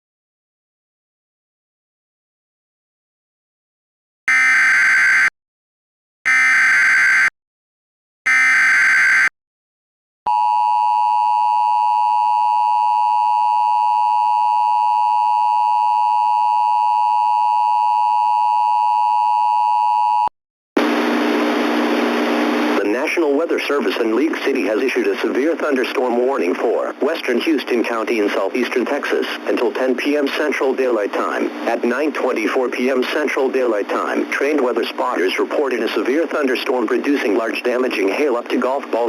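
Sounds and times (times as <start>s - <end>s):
hissy radio audio feed: 20.8s - 39.0s.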